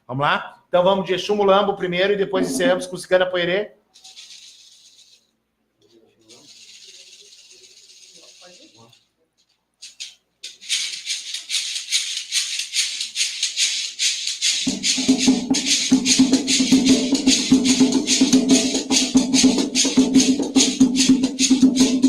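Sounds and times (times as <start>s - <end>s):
hand drums: 2.3s - 2.8s, 10.9s - 22.0s
shaker fast rhythm: 3.9s - 5.3s, 5.9s - 9.1s, 9.8s - 22.0s.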